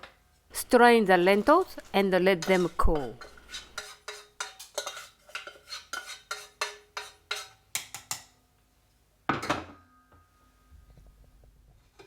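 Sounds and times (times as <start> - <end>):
metal utensil clinking on cookware: 1.8 - 8.4.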